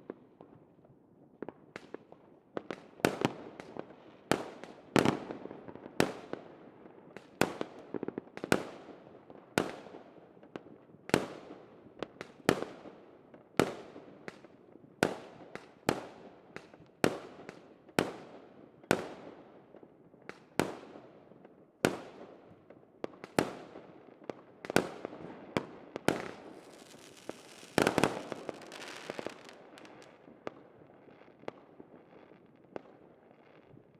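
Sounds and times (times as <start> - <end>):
fireworks bangs: 25.6 - 30.2
fireworks crackling: 26.0 - 30.3.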